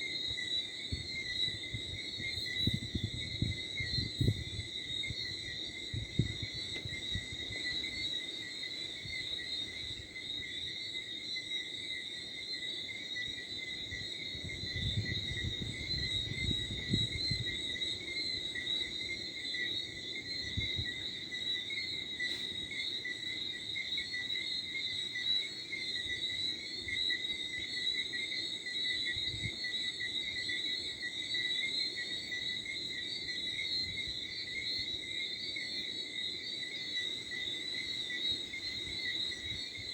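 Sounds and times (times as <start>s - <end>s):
crickets chirping: 0.0s - 39.9s
wind on microphone: 0.8s - 8.0s, 13.9s - 18.1s, 20.3s - 21.0s, 29.1s - 29.6s.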